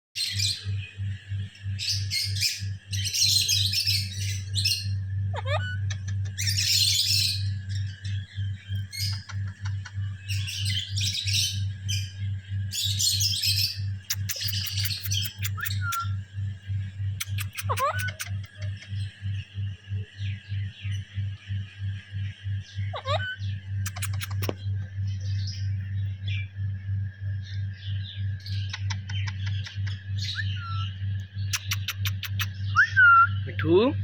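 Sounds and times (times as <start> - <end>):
low pulsing hum: 0.2 - 34.0
parrots chattering and squawking: 1.8 - 12.1, 12.7 - 16.2, 17.1 - 19.1, 22.9 - 24.7, 28.4 - 33.4
swooping bird call: 17.3 - 18.6.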